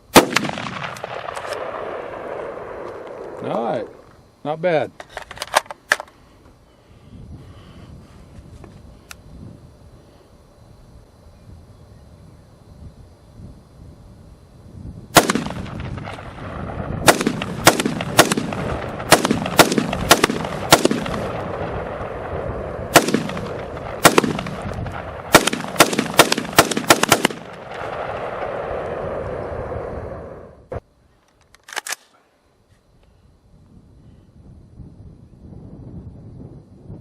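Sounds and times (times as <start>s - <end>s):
semi-automatic rifle firing: 0.1s - 3.4s, 15.1s - 28.9s
sharp metallic click: 31.2s - 32.1s.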